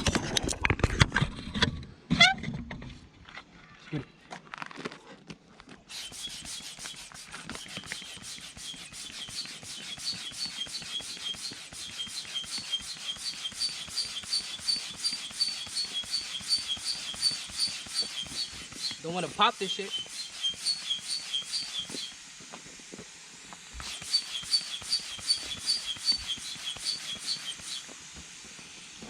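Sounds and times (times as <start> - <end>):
manual air pump strokes: 5.8 - 29.0.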